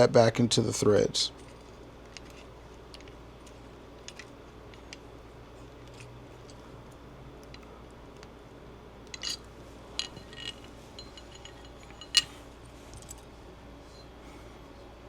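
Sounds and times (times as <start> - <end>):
small metal clicks and clinks: 9.1 - 13.2.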